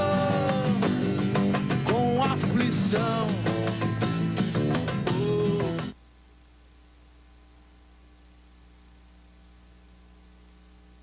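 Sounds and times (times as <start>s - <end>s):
rock song: 0.0s - 6.0s
faint electrical hum and hiss: 5.0s - 11.0s.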